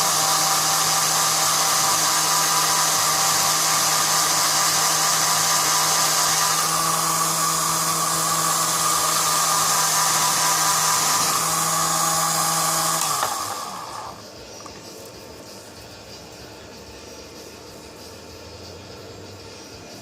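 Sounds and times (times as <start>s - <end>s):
drill motor whining: 0.0s - 14.2s.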